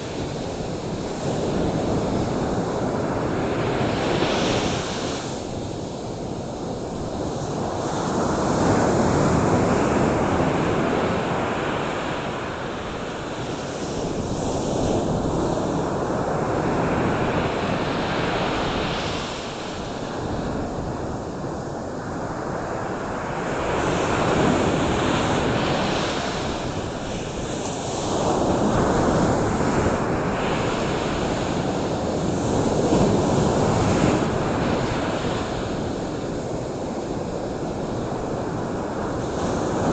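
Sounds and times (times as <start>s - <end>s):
surf washing onto shore: 0.0s - 39.9s.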